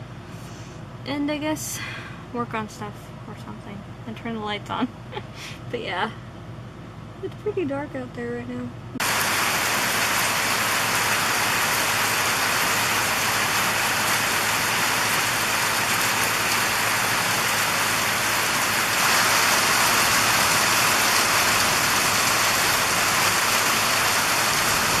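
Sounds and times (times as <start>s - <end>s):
heavy rain pouring: 9.0s - 25.0s.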